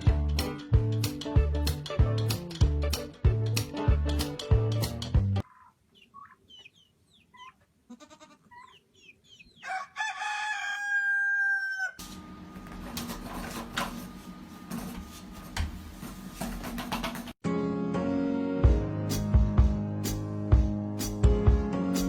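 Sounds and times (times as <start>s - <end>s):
chicken calling: 5.4s - 12.0s.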